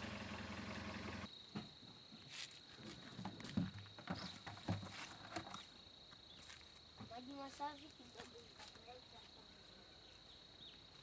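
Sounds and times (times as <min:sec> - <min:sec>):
car engine idling: 0:00.0 - 0:01.3.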